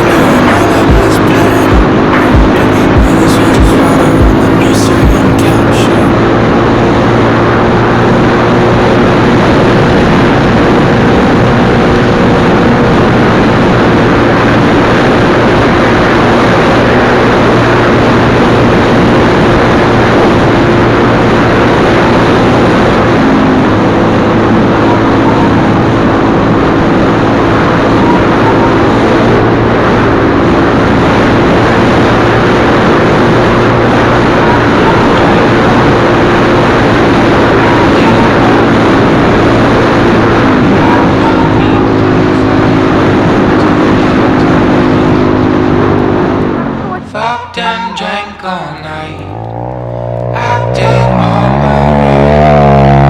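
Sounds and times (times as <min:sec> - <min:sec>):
motorcycle engine running: 0:49.2 - 0:53.0.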